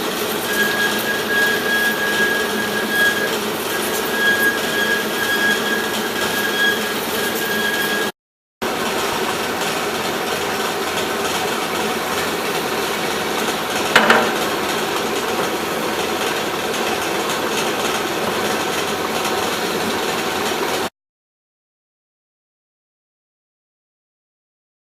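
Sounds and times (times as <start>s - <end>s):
band saw running: 0.0s - 20.9s
sharp metal clank: 14.0s - 14.7s.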